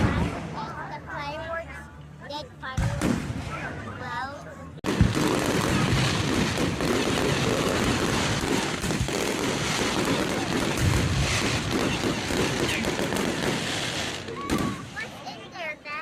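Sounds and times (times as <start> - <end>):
low fireworks booms: 2.8 - 3.7, 4.8 - 15.4
fireworks crackling: 4.8 - 16.0.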